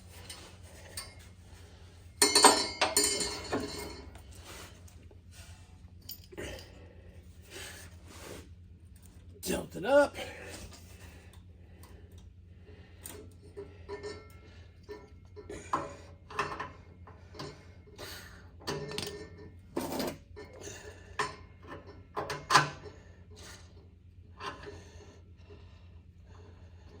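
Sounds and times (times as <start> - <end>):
steady low hum: 0.0 - 19.7
metal clanks and knocks: 2.2 - 4.2.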